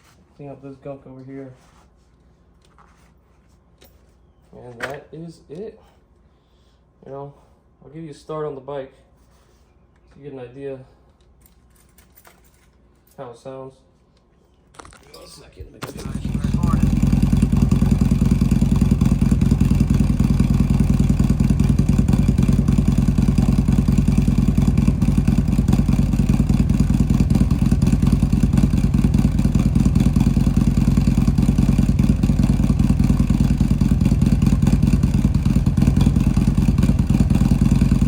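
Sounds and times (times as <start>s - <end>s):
motorcycle engine idling: 15.8s - 38.0s.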